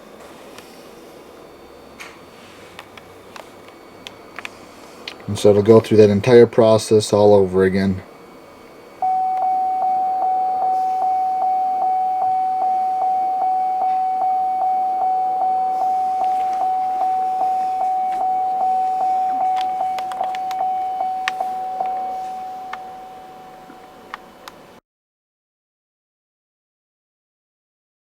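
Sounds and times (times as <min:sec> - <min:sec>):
electronic chime ringing: 0:09.0 - 0:24.1.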